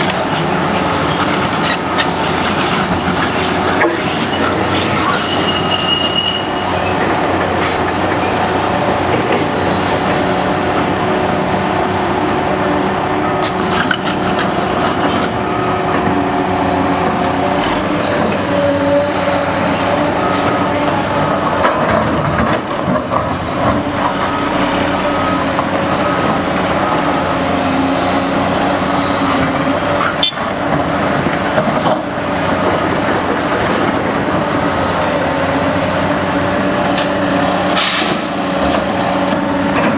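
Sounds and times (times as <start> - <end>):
engine running: 0.0 - 39.9.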